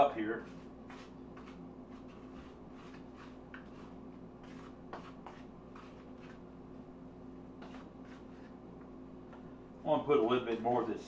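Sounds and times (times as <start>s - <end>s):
faint steady hum: 0.0s - 11.0s
utensil scraping on a plate: 0.4s - 6.4s, 7.6s - 8.6s.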